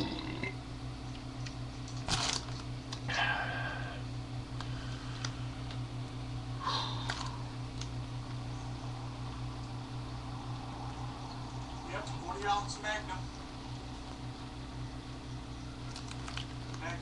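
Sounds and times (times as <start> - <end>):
man burping: 0.0 - 0.6
steady low hum: 0.0 - 17.0.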